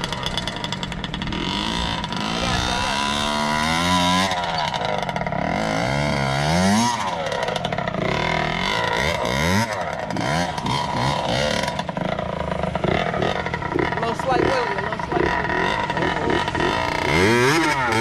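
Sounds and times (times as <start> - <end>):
dirt bike engine revving: 0.0 - 18.0.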